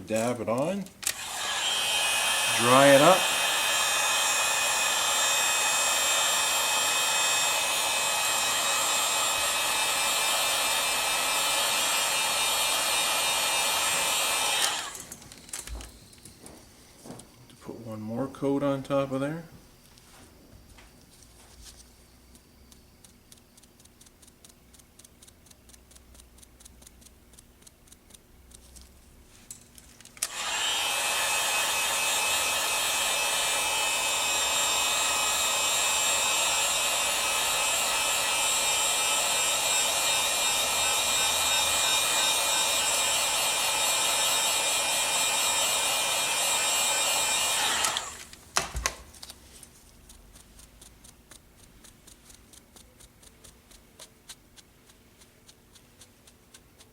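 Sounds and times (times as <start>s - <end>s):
hair dryer motor whine: 1.0s - 15.9s, 30.2s - 48.7s
clicks: 22.3s - 30.6s, 47.1s - 56.9s.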